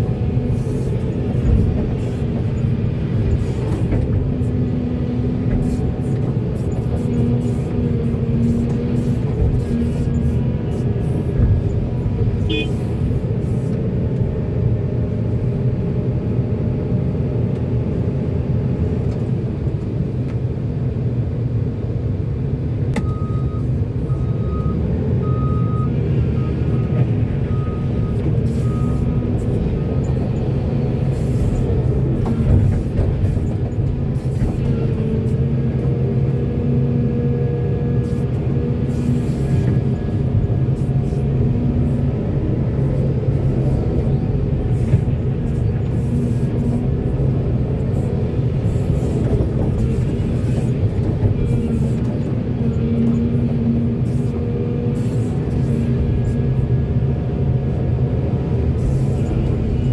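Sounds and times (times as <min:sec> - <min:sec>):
heavy diesel engines running: 0:00.0 - 0:59.9
reversing alarm beeps: 0:23.0 - 0:29.1.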